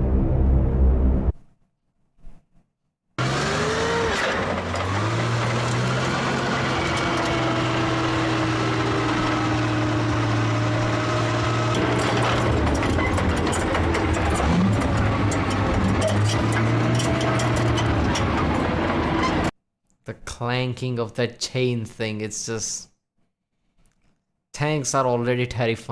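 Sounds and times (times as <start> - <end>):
tank engine droning: 3.2 - 19.5
metal tracks clanking: 11.6 - 19.5.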